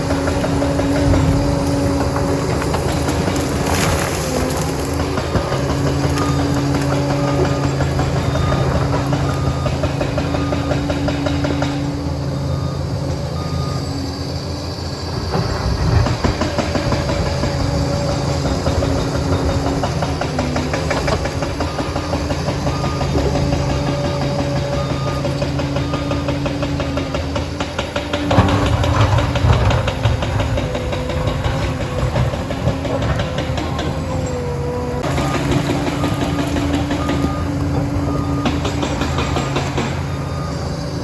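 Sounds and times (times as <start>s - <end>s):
diesel engine running: 0.0s - 41.0s
reversing alarm beeping: 0.0s - 41.0s
heavy knocks and clatter: 15.2s - 41.0s.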